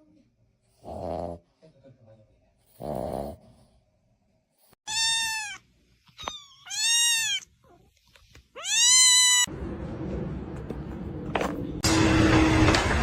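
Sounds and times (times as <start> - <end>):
cat meowing: 4.8 - 7.6, 8.5 - 9.5.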